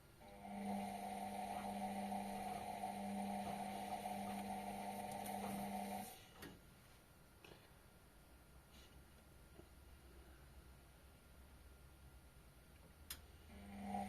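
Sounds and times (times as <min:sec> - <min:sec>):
washing machine humming: 0:00.0 - 0:06.3, 0:13.5 - 0:14.0.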